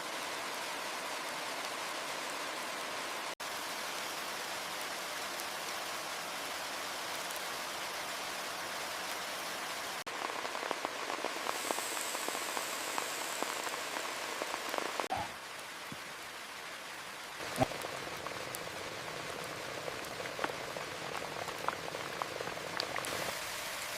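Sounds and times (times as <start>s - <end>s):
heavy rain hissing: 0.0s - 23.9s.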